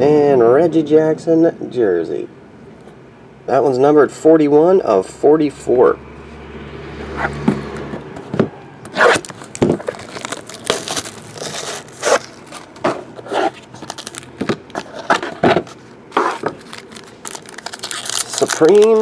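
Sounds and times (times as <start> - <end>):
plastic wrapping crinkling and tearing: 9.0 - 15.1, 16.3 - 19.0.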